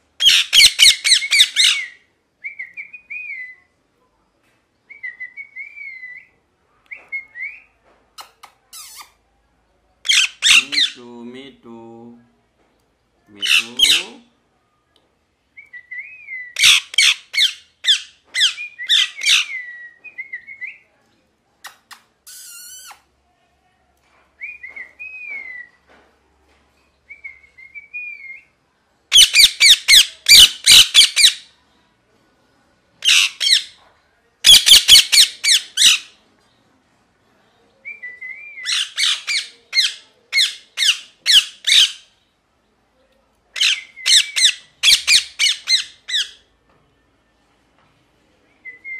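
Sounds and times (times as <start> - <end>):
parrot screeching: 0.2 - 2.0, 10.1 - 11.0, 13.4 - 14.0, 16.6 - 19.6, 29.1 - 31.5, 33.0 - 33.8, 34.4 - 36.1, 38.7 - 42.1, 43.6 - 46.4
parrot chirping: 0.2 - 3.5, 10.0 - 11.0, 13.4 - 14.3, 16.3 - 19.9, 21.6 - 23.0, 29.1 - 31.5, 33.0 - 33.8, 34.4 - 36.2, 38.5 - 42.1, 43.6 - 46.4.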